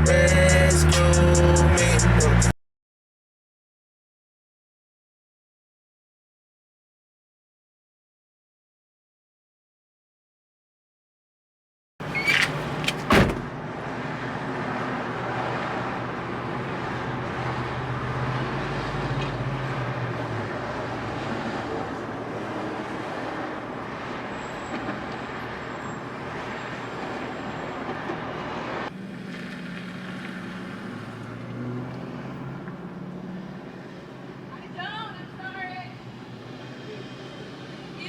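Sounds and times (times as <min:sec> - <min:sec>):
car engine and road noise: 0:12.0 - 0:38.0.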